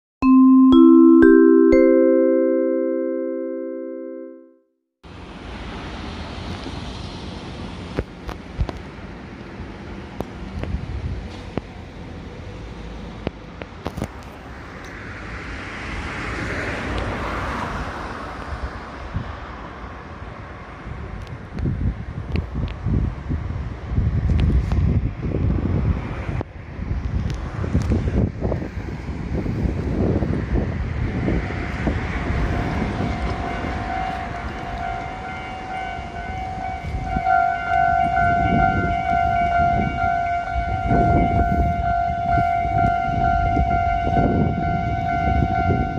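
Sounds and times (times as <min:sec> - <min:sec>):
level crossing warning tone: 0:00.2 - 0:04.6, 0:32.7 - 0:45.9
vehicle passing by: 0:14.5 - 0:19.9.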